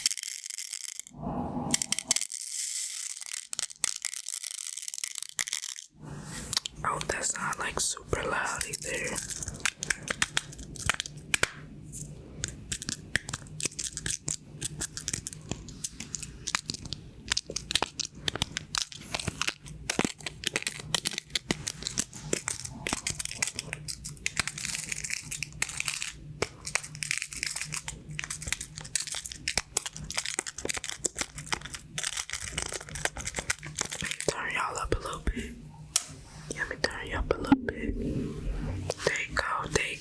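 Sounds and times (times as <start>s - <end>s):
pin toy pins clicking and rattling: 0.0s - 1.1s, 2.2s - 5.9s
low steady hum: 6.0s - 40.0s.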